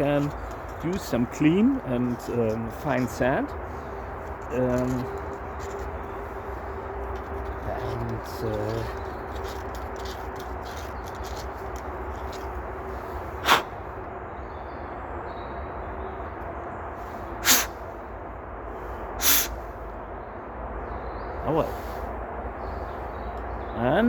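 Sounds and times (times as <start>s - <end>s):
low outdoor background: 0.0s - 24.0s
person puffing breath: 13.4s - 13.7s, 17.4s - 17.8s, 19.2s - 19.6s.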